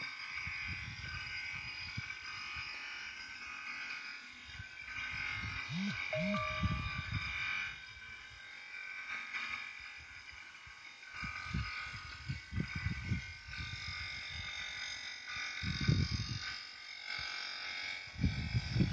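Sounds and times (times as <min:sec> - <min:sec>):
high-pitched electrical buzz: 0:05.5 - 0:07.5.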